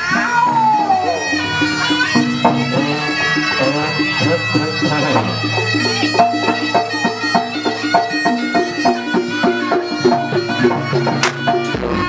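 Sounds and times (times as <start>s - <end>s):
struck ringing pitched notes: 0.0s - 12.0s.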